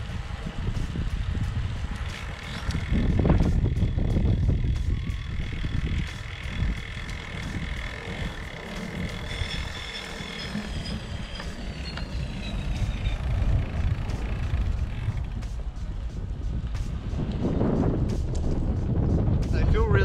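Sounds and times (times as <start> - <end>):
wind buffeting microphone: 0.0 - 20.0
faint high whining tones: 4.5 - 15.2.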